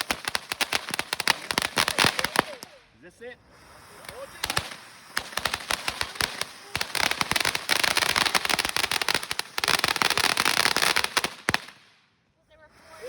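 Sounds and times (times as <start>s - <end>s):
fireworks popping and crackling: 0.0s - 3.0s, 3.6s - 12.1s.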